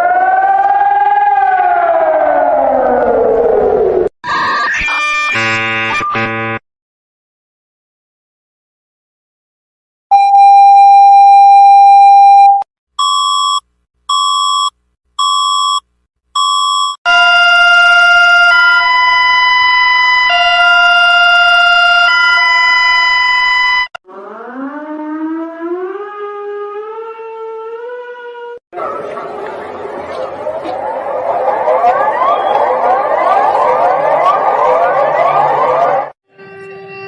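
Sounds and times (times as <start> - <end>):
short beeps: 10.1 - 15.8, 16.4 - 17.0
two-tone alarm: 10.1 - 15.8, 16.4 - 26.1, 29.1 - 36.2
siren winding up: 16.4 - 28.6, 30.4 - 36.2.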